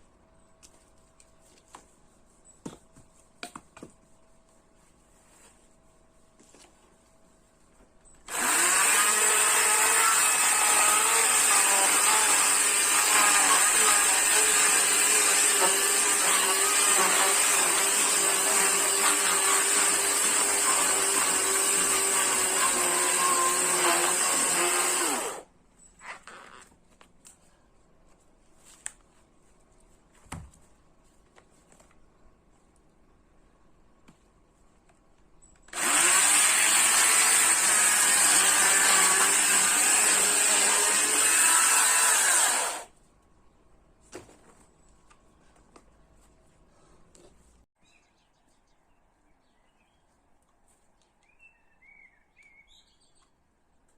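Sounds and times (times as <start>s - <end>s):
chainsaw running: 8.3s - 25.5s, 35.7s - 42.9s.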